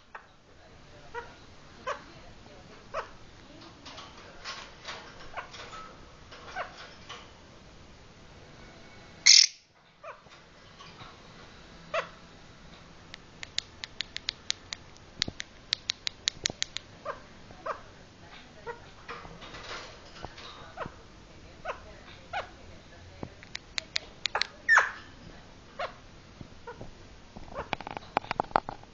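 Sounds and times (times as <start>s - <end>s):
soft bird chirps: 9.3s - 9.6s
shrill bird squawk: 9.3s - 9.7s, 24.7s - 25.0s
bird sharp clicks: 13.1s - 16.8s, 23.4s - 24.5s.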